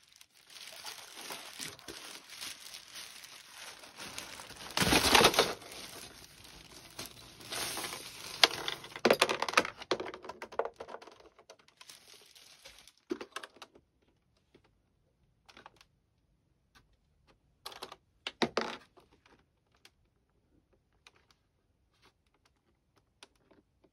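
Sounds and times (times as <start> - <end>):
plastic packaging crinkling: 0.0 - 9.7, 10.8 - 13.4.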